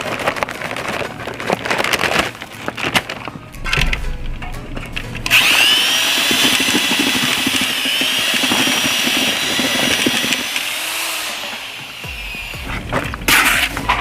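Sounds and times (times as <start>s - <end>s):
electric drill whining: 5.2s - 13.7s.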